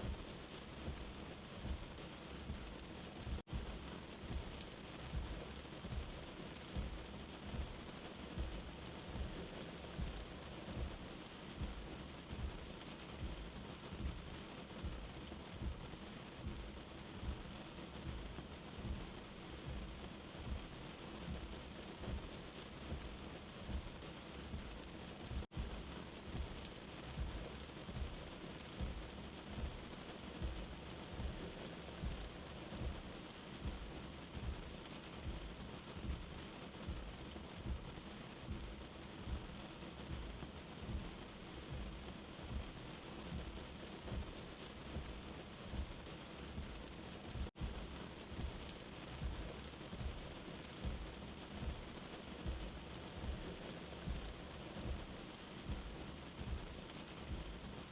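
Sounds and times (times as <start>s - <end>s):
steady rain falling: 0.0s - 57.9s
low rumble of thunder: 25.3s - 28.2s.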